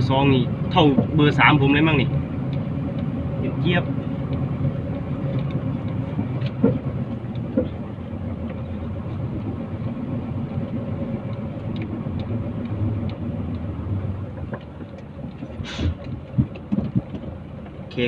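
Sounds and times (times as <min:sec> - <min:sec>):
diesel truck engine rumbling: 0:00.0 - 0:18.0
short hiss: 0:15.6 - 0:16.0.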